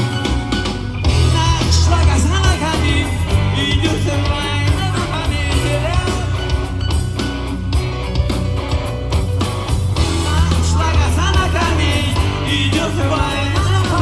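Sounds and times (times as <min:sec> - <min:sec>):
loud bass line: 0:00.0 - 0:14.0
person singing: 0:01.1 - 0:06.7, 0:10.1 - 0:14.0.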